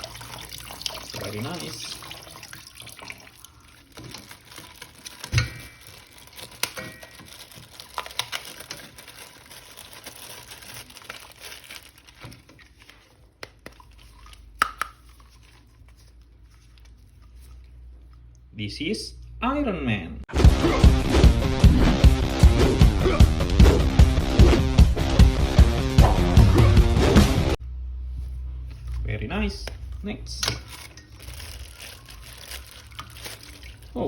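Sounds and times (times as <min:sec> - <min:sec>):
plastic toy crinkling: 0:03.8 - 0:17.6, 0:30.4 - 0:34.0.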